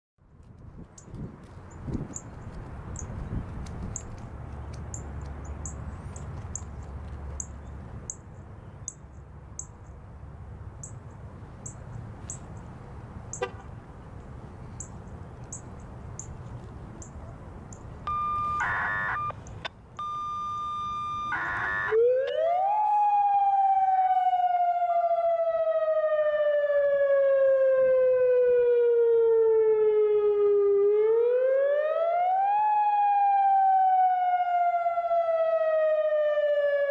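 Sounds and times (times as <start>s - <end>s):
steady background noise: 0.3s - 23.1s
high chirps: 17.0s - 22.0s
warning siren wailing: 18.0s - 19.4s, 20.0s - 36.9s
short steady tone: 18.1s - 19.4s.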